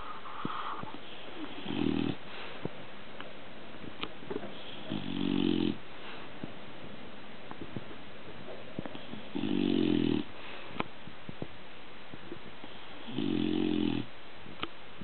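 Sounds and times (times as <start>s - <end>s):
dog snoring: 0.0s - 2.2s, 4.5s - 5.8s, 9.0s - 10.3s, 13.0s - 14.1s.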